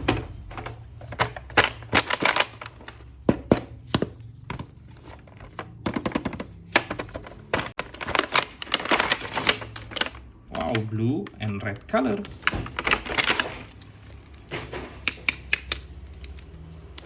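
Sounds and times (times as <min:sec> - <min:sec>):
packaging crinkling and tearing: 0:00.9 - 0:03.2, 0:03.9 - 0:14.5
plastic toy parts clicking: 0:15.0 - 0:17.0.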